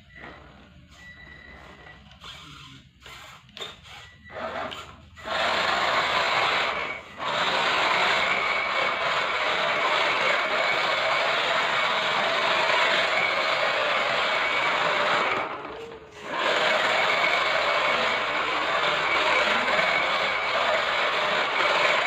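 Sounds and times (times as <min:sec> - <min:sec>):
model truck tyres scraping: 0:00.1 - 0:22.0.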